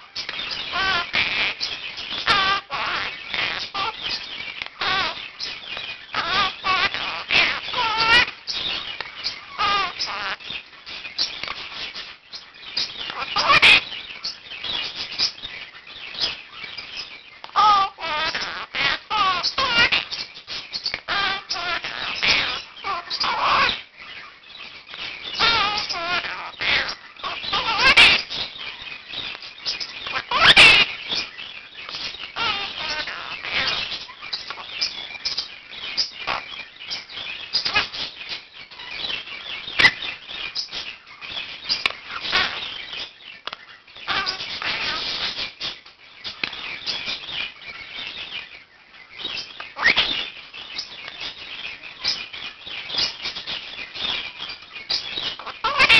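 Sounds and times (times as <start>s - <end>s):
parakeet squawks and chirps: 0.1s - 4.2s, 4.8s - 5.5s, 6.1s - 10.4s, 12.8s - 15.3s, 17.6s - 23.8s, 25.3s - 28.8s, 29.6s - 31.3s, 31.9s - 36.6s, 41.7s - 43.1s, 44.1s - 45.3s, 49.8s - 50.3s, 54.9s - 55.9s.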